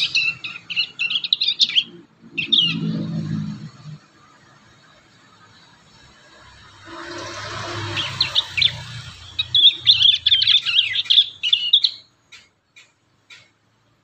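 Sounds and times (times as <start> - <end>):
young birds twittering: 0.0 - 4.9, 7.7 - 13.5.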